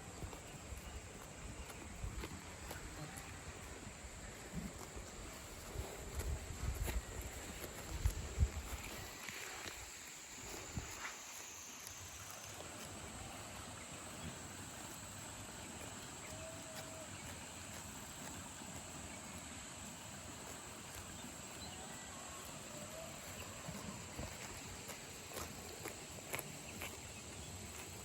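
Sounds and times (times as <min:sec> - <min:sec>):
crickets droning: 0:00.0 - 0:28.0.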